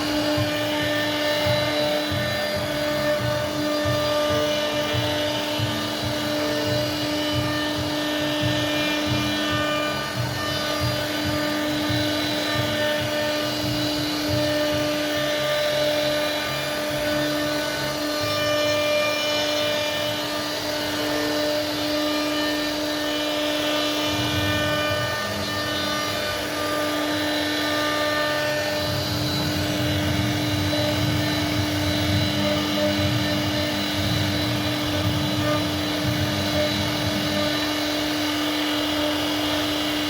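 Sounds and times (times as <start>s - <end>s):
router spindle whine: 0.0s - 40.0s
rumble of bit cutting wood: 0.0s - 40.0s.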